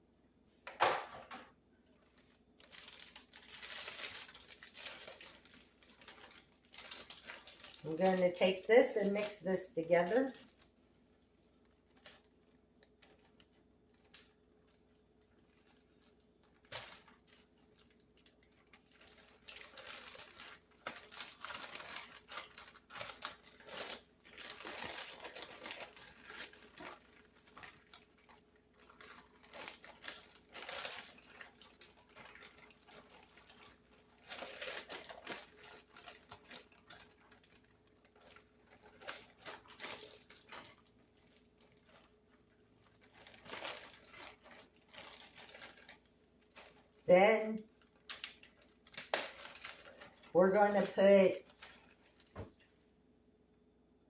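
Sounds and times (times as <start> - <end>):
marinade being mixed by hand: 1.6 - 53.4.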